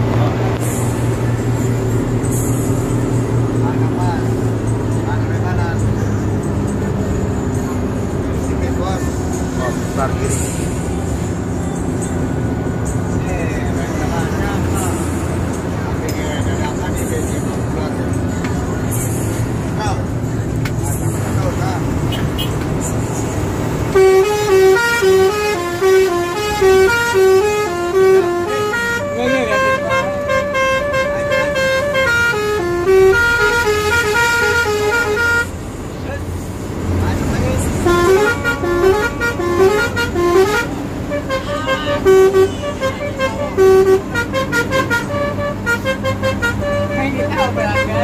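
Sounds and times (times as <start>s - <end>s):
bus engine: 0.0s - 48.0s
road noise: 0.0s - 48.0s
musical bus horn tune: 22.0s - 35.6s, 37.6s - 48.0s.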